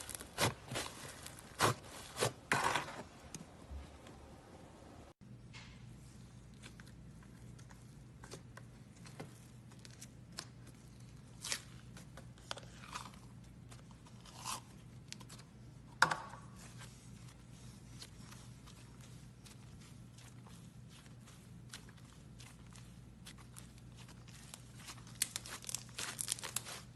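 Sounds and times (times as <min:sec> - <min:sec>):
slime crackling and popping: 0:00.0 - 0:01.7, 0:21.6 - 0:26.9.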